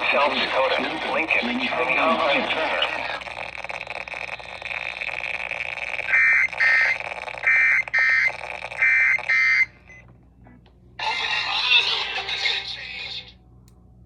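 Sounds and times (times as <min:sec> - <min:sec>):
burst of static: 0:00.0 - 0:09.8
radio hiss: 0:00.0 - 0:09.8
harsh digital data bursts: 0:00.6 - 0:09.8.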